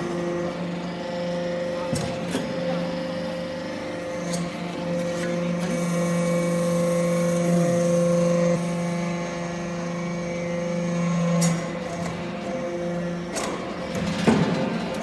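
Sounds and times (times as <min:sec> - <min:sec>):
hydraulic press motor hum: 0:00.0 - 0:15.0.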